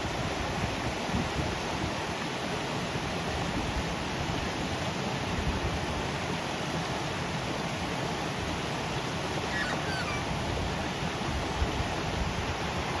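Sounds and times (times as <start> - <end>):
waterfall rushing: 0.1 - 13.0
faint bird chirps: 9.5 - 10.3.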